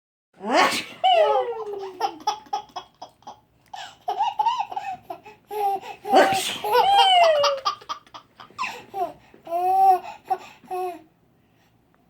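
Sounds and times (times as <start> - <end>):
fake sneeze: 0.4 - 1.4, 6.1 - 7.0
baby laughing: 1.0 - 11.0.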